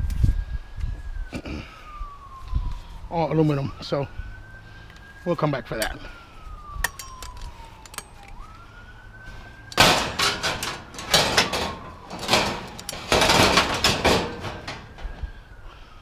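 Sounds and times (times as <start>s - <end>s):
faint siren wailing: 0.0s - 16.0s
scrap metal clanking: 9.8s - 15.1s.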